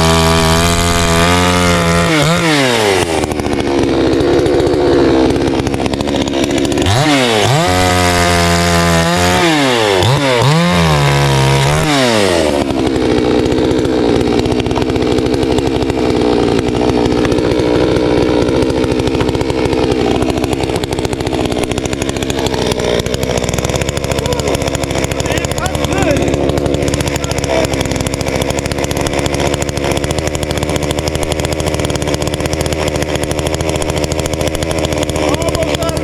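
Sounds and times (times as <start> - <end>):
chainsaw engine idling and revving: 0.0 - 36.0.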